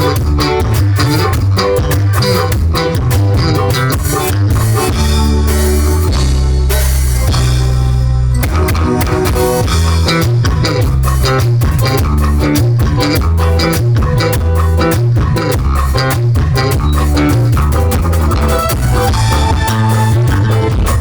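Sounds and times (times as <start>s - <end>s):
live band playing: 0.0s - 21.0s.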